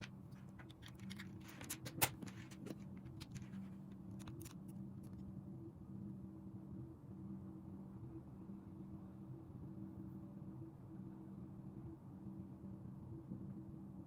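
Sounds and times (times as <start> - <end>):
small clicks and taps: 0.0 - 5.2.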